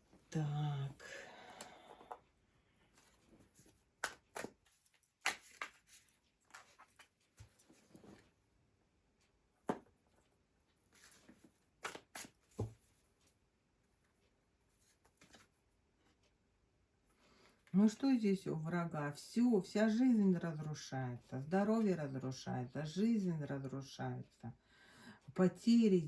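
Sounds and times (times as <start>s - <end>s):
cards rustling: 3.0s - 7.8s.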